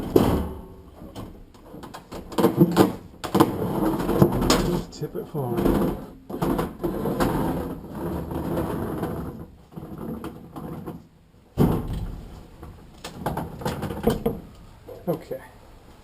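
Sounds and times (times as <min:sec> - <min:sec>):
heavy thud: 0:11.6 - 0:12.5.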